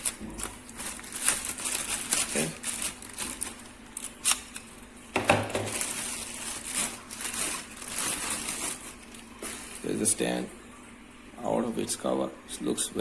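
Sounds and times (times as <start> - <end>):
plastic wrapping crinkling: 0.0 - 4.8, 5.4 - 10.5.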